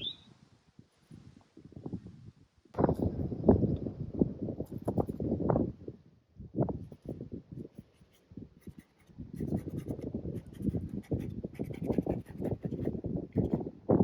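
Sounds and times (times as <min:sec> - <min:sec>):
paintbrush scratchy strokes: 0:04.6 - 0:05.3, 0:06.8 - 0:13.6.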